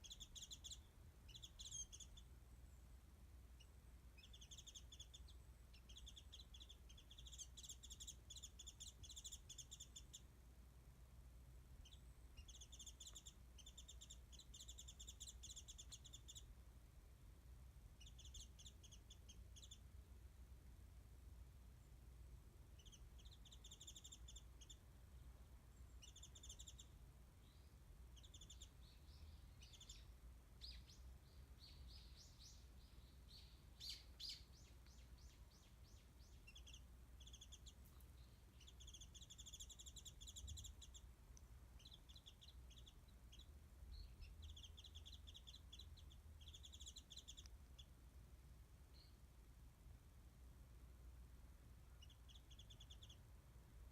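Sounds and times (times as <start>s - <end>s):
bird twittering trills: 0.0s - 2.3s, 4.2s - 10.2s, 11.8s - 16.5s, 18.0s - 19.8s, 22.8s - 24.8s, 25.8s - 41.1s, 41.8s - 47.9s, 52.0s - 53.2s.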